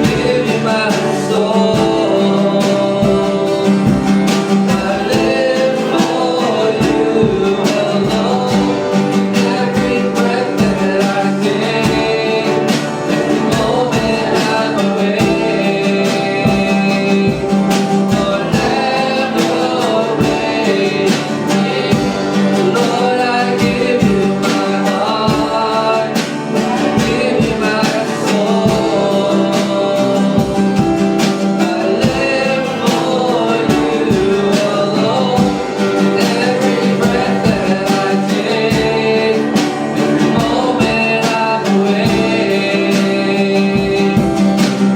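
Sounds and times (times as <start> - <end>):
band with strummed guitar: 0.0 - 44.9
person singing worship song: 0.0 - 44.9.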